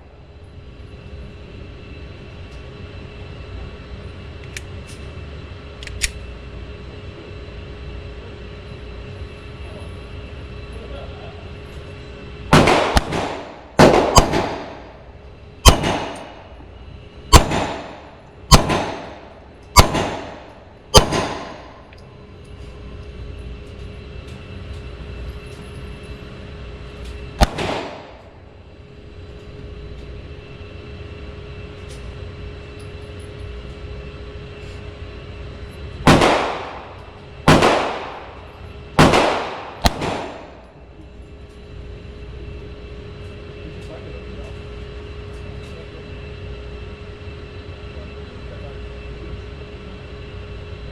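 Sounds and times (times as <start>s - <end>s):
pistol shots with ringing echo: 12.5s - 14.9s, 15.6s - 16.4s, 17.3s - 21.8s, 27.4s - 28.3s, 36.1s - 40.7s.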